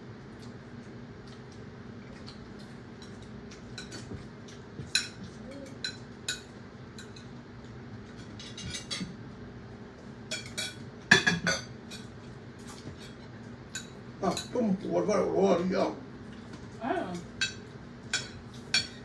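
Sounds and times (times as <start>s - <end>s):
low steady hum: 0.0s - 19.0s
cutlery and dishes clinking: 8.1s - 9.2s.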